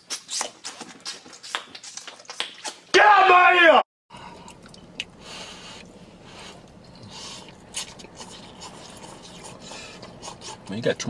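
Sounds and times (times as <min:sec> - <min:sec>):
lip smacks: 0:00.0 - 0:02.9, 0:04.4 - 0:10.7
hissing breaths: 0:05.2 - 0:07.6, 0:08.3 - 0:10.6.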